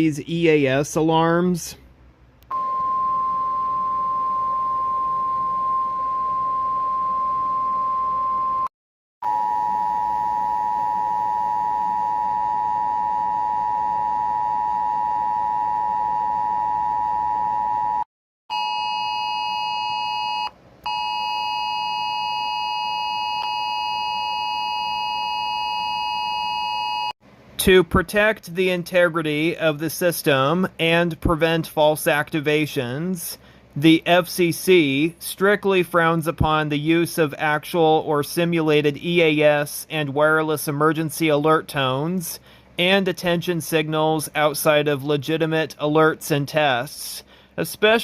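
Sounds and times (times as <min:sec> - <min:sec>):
harsh two-note alarm tone: 0:02.5 - 0:27.1
two-note alarm tone: 0:02.5 - 0:27.1
steady single alarm tone: 0:02.5 - 0:27.2.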